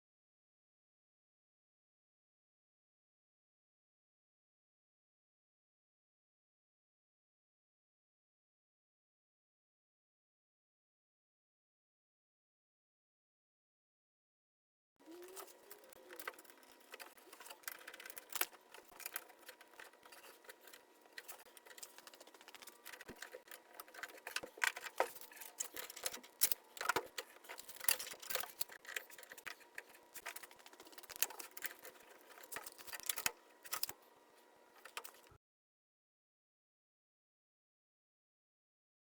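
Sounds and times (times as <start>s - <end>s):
faint steady hum: 15.0s - 35.4s.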